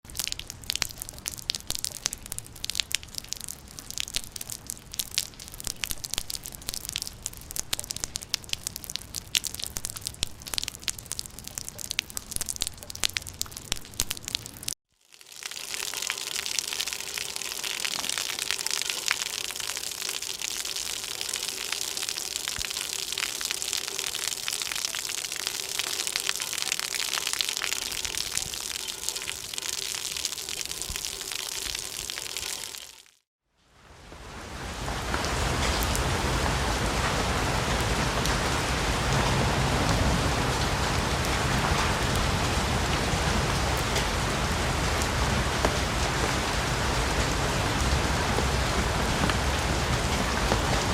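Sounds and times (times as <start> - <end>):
rain drops pattering: 0.0 - 50.9
heavy rainfall hiss: 33.8 - 50.9.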